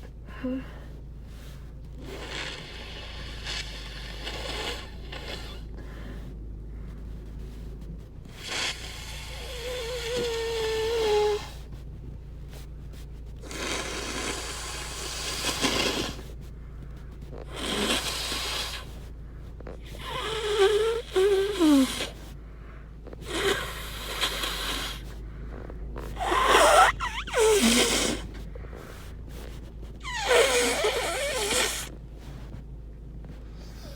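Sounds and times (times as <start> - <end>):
person blowing nose: 2.0 - 6.2, 8.3 - 11.7, 13.4 - 16.4, 17.3 - 19.1, 19.8 - 22.3, 23.2 - 32.5.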